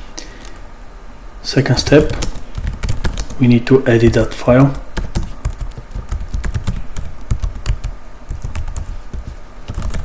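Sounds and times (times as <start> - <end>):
typing on computer keyboard: 1.9 - 3.4, 5.0 - 10.0.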